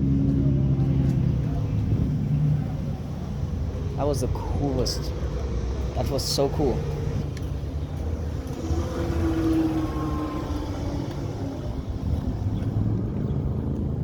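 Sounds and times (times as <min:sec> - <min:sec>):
motor vehicle rumbling: 0:00.0 - 0:14.0.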